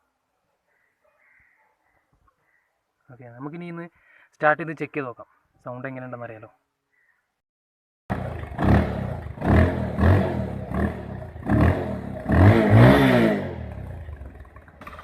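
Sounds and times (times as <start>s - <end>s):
loud motorcycle engine revving: 8.1s - 15.0s.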